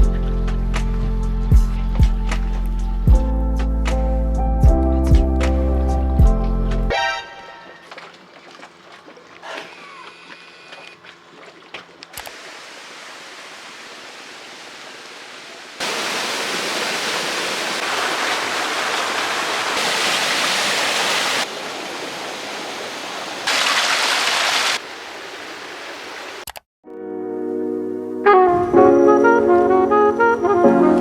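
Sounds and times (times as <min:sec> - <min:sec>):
rushing water: 0:06.9 - 0:26.4.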